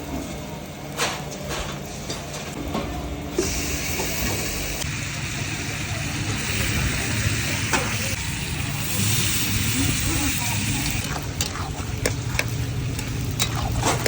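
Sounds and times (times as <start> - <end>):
food sizzling in a wok: 3.4 - 14.0.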